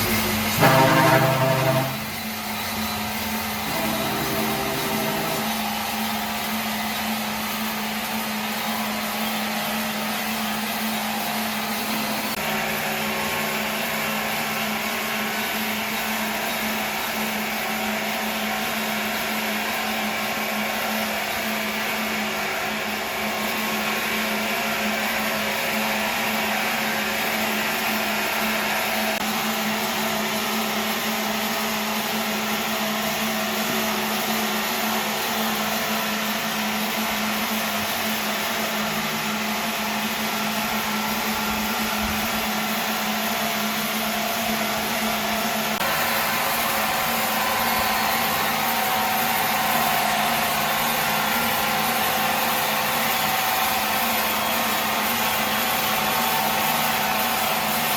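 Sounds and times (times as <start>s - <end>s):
machine humming at high speed: 0.0s - 57.9s.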